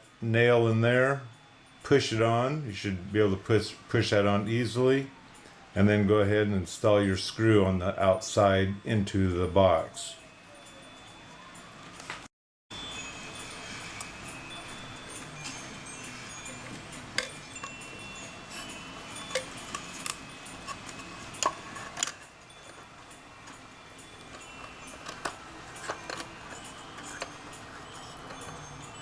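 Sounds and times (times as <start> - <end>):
light chime-like tinkling: 0.0 - 5.8, 8.4 - 12.1, 12.7 - 29.0.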